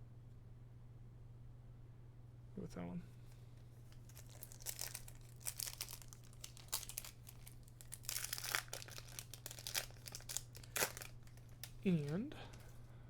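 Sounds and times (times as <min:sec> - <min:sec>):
foil wrapper crinkling: 0:03.9 - 0:12.8.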